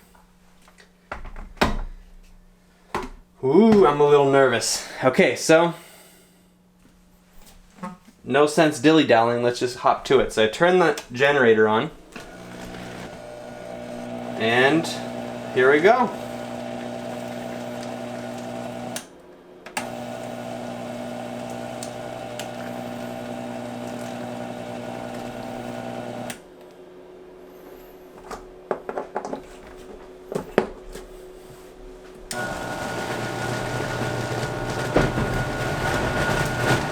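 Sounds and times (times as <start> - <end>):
blender motor humming: 12.1 - 19.1, 19.8 - 26.5, 32.3 - 36.9.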